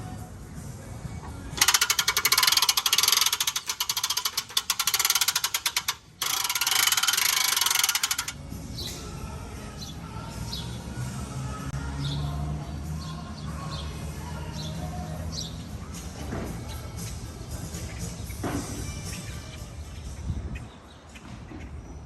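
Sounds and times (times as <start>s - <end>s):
ratchet-like mechanical clicking: 1.6s - 8.4s.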